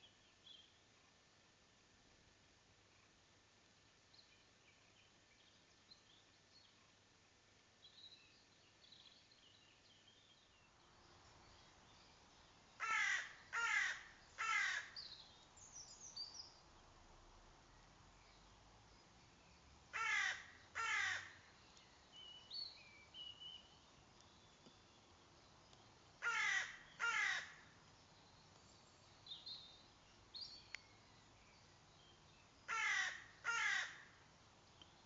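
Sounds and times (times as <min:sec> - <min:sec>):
small birds chirping: 0:00.0 - 0:01.2, 0:03.0 - 0:17.1, 0:17.7 - 0:35.0
crow cawing: 0:12.8 - 0:15.0, 0:19.9 - 0:21.4, 0:26.2 - 0:27.6, 0:32.7 - 0:34.2.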